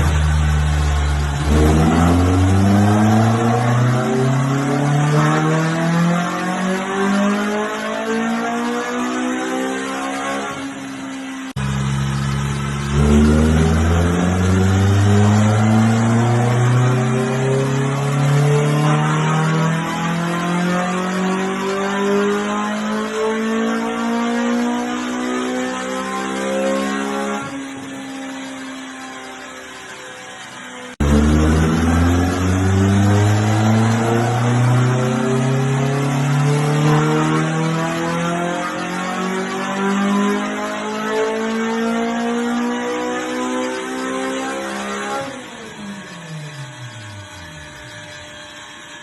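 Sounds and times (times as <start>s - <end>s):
car engine revving up: 0.0s - 49.0s.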